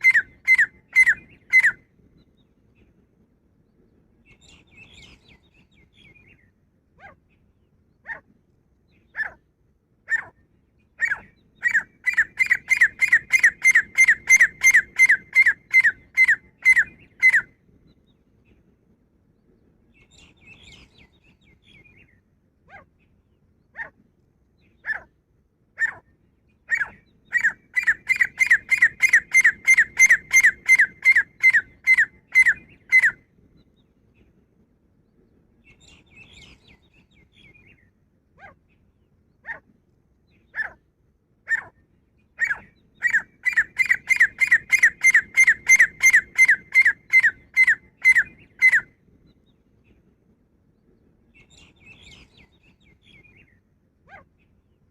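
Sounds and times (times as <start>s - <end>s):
soft bird chatter: 3.6s - 9.5s, 19.3s - 24.0s, 35.0s - 39.6s, 50.7s - 54.9s.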